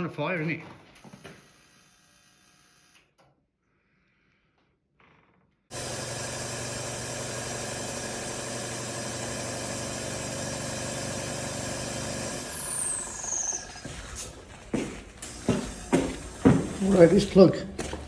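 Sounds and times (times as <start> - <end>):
truck engine running: 5.7 - 18.0.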